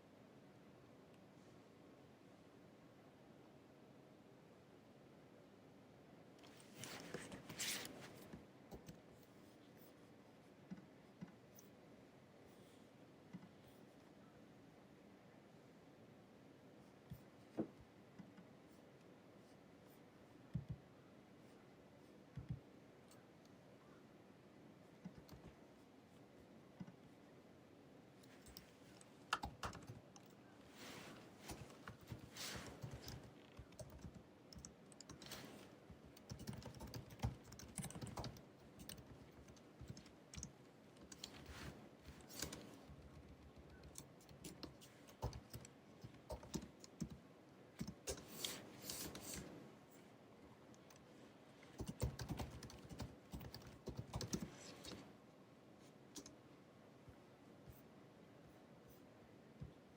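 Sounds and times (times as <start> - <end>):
laptop keyboard typing: 25.0 - 25.6, 28.4 - 30.4, 31.4 - 47.2, 47.8 - 49.4, 51.8 - 55.0, 56.1 - 56.4.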